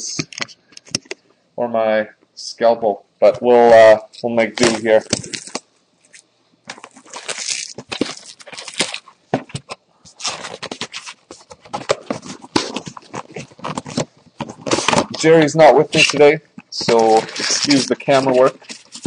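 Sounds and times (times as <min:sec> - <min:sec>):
packaging ripping and crinkling: 0:04.6 - 0:09.1, 0:10.1 - 0:15.3, 0:16.8 - 0:19.0.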